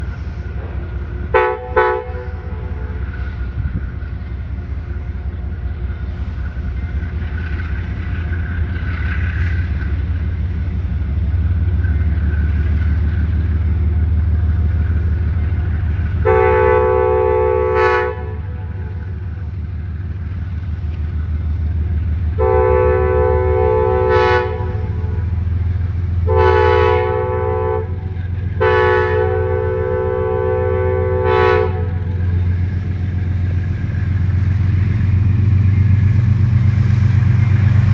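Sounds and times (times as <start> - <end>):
diesel engine rumble: 0.0 - 37.9
locomotive air horn blasts: 1.3 - 3.1, 16.2 - 19.0, 22.4 - 25.4, 26.2 - 32.4.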